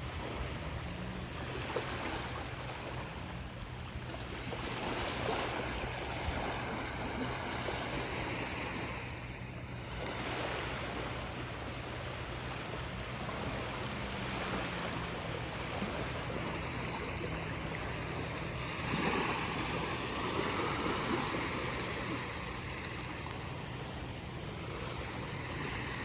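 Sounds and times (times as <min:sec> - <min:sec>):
ocean waves on a beach: 0:00.0 - 0:26.0
wave breaking: 0:12.8 - 0:26.0.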